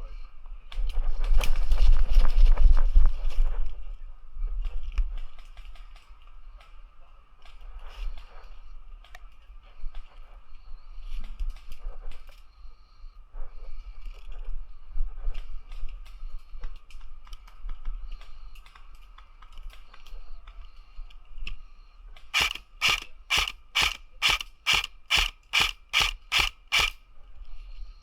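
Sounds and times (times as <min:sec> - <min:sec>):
airsoft gun shots clacking: 0:22.4 - 0:27.0.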